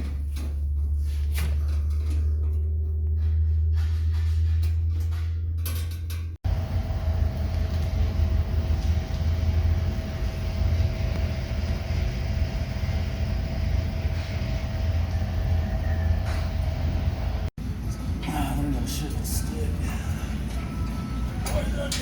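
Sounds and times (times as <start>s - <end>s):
machinery rumbling: 0.0s - 22.0s
faint hum: 6.5s - 22.0s.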